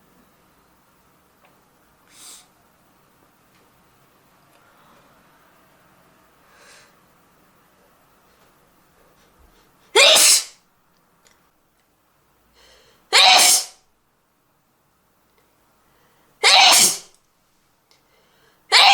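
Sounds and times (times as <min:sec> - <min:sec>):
person sneezing: 0:10.0 - 0:10.6, 0:13.1 - 0:13.8, 0:16.4 - 0:17.1.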